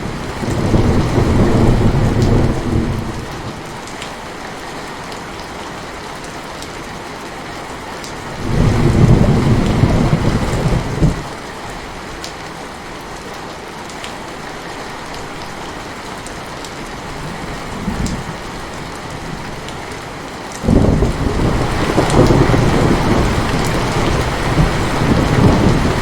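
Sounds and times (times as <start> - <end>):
thunder rumble: 0.0 - 3.6, 8.4 - 11.3, 20.6 - 26.0
heavy rain falling: 0.0 - 26.0.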